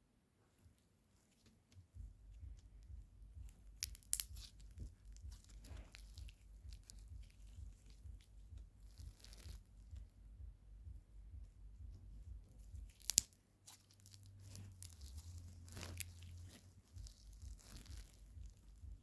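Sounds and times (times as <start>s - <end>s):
slime crackling and popping: 3.7s - 9.7s, 12.6s - 19.0s.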